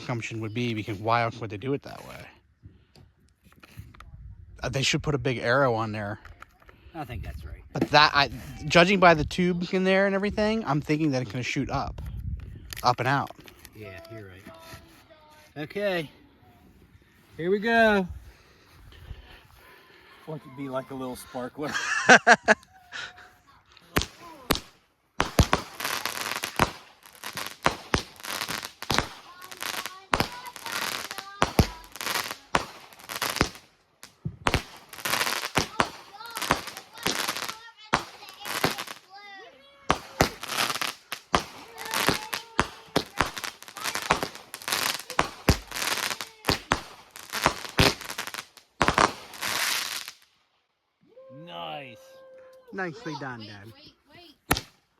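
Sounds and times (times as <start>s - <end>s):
fireworks crackling: 7.7s - 12.0s, 23.8s - 50.6s, 52.7s - 54.9s
firework bangs: 23.9s - 39.2s, 39.8s - 50.3s, 54.5s - 54.8s.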